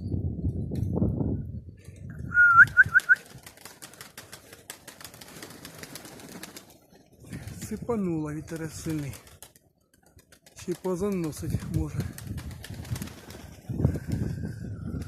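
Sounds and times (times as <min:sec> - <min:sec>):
wind gusting on microphone: 0:00.0 - 0:03.6, 0:07.2 - 0:09.3, 0:10.6 - 0:15.0.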